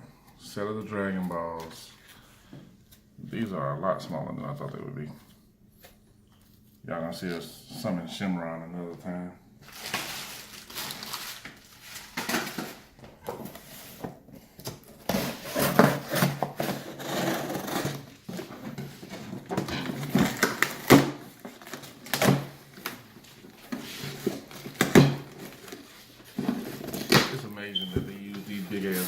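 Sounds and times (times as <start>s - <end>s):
cardboard box scraping and rustling: 15.1s - 18.7s.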